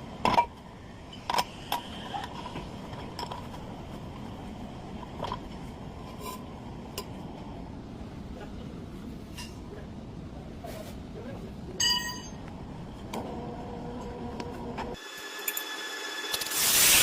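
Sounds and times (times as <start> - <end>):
low workshop background: 0.0 - 17.0
metal clinks on metal: 11.8 - 12.4.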